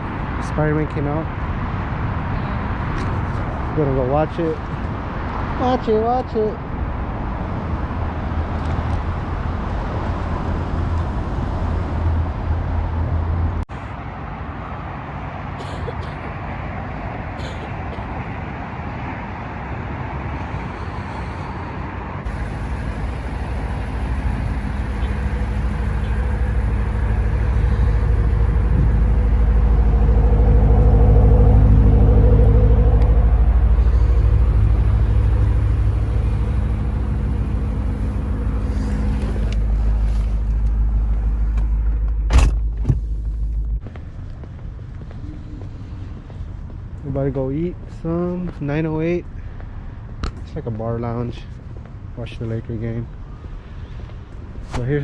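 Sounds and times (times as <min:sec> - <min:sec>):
road noise: 0:00.0 - 0:55.0
car engine hum: 0:20.6 - 0:44.1.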